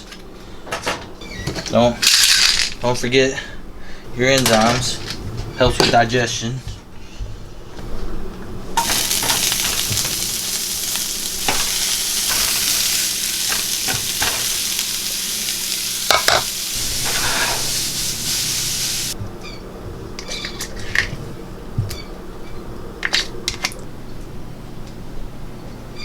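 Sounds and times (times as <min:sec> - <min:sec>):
food sizzling in a frying pan: 0:08.8 - 0:19.2
utensil knocking against pan: 0:16.1 - 0:17.2.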